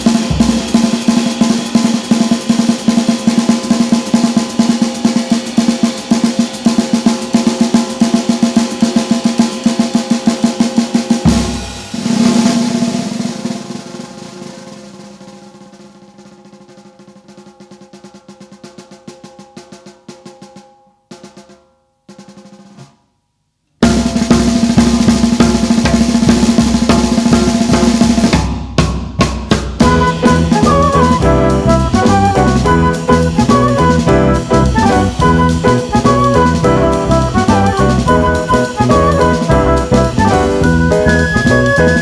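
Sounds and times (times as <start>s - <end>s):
instrumental band music: 0.0s - 15.3s, 23.8s - 42.0s
snare drum rolls: 0.0s - 17.3s, 23.8s - 42.0s.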